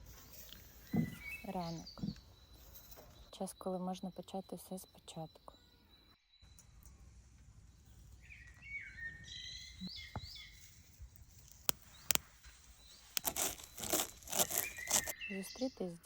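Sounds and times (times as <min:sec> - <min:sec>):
low outdoor background: 0:00.0 - 0:16.0
birds chirping: 0:00.2 - 0:16.0
crackling: 0:09.7 - 0:15.2.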